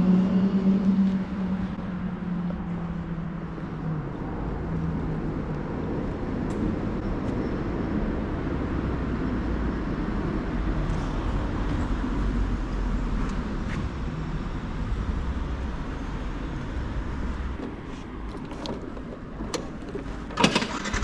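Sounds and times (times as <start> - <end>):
motorcycle engine rumble: 15.5 - 21.0.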